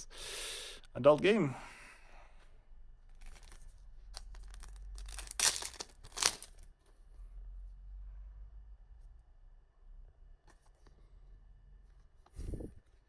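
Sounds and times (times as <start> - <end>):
wrapper crinkling: 3.1 - 6.8
wrapper ripping: 3.2 - 6.7.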